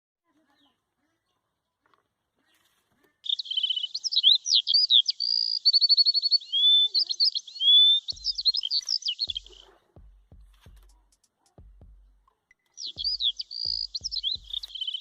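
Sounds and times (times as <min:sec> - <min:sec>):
songbird singing: 0:00.3 - 0:15.0
soft low thumps: 0:08.1 - 0:12.3, 0:12.9 - 0:14.7.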